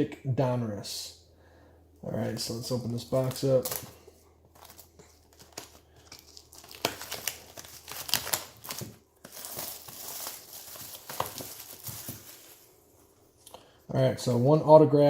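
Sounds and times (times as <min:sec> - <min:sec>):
plastic wrap crinkling and tearing: 0:02.6 - 0:12.8.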